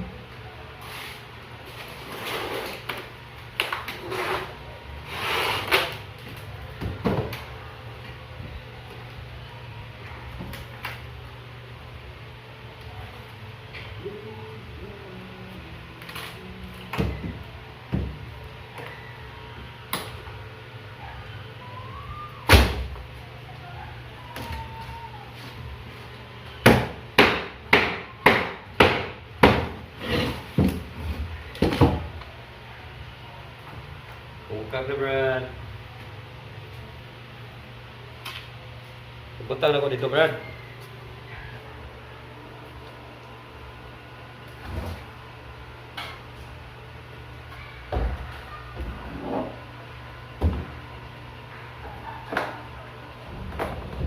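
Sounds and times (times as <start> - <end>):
hammer striking wood: 26.6 - 29.8
cabinet parts scraping and sliding: 30.0 - 31.2.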